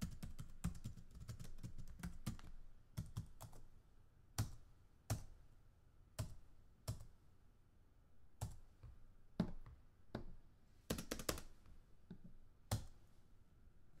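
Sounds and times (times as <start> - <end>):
computer keyboard typing: 0.0 - 3.6, 10.9 - 11.6.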